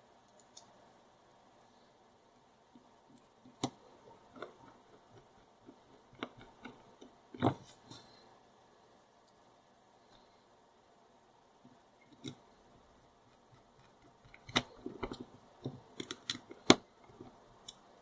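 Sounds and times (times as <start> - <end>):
plastic switch parts clicking: 14.2 - 16.9.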